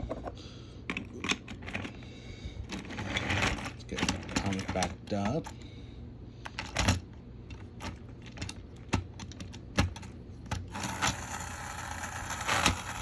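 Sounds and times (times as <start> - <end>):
small battery motor whirring: 10.7 - 13.0.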